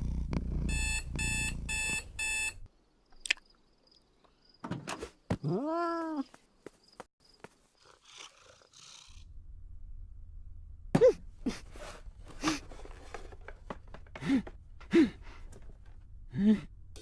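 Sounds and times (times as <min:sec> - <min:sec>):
steady low hum: 0:09.2 - 0:12.4.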